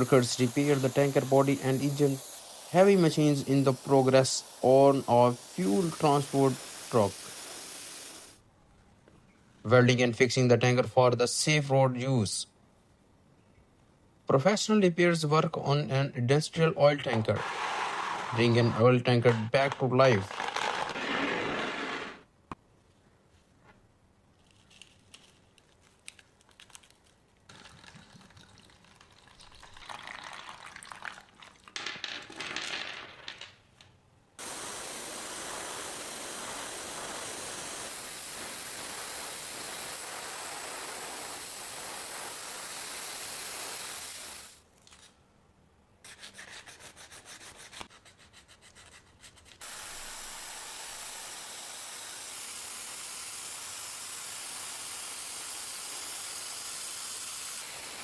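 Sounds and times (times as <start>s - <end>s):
spray paint hissing: 0.0s - 8.4s, 34.4s - 44.6s, 49.6s - 58.0s
scraping and rubbing: 17.0s - 22.2s.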